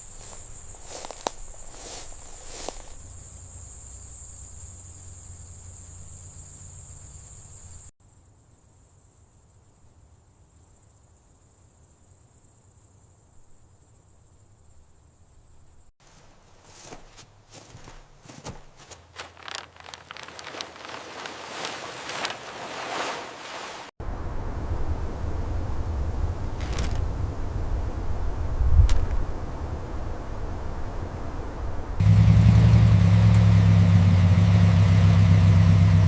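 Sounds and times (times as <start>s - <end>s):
insects chirping: 0.0s - 23.6s.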